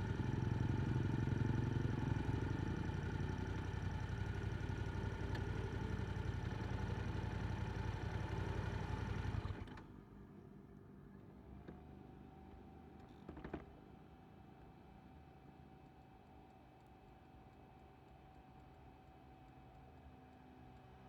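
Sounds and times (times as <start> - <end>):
motorcycle engine idling: 0.0 - 9.5.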